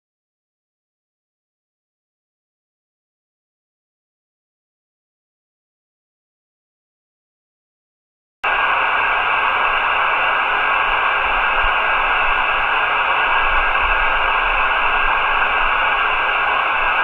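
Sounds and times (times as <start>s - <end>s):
radio receiver static hiss: 8.4s - 17.0s.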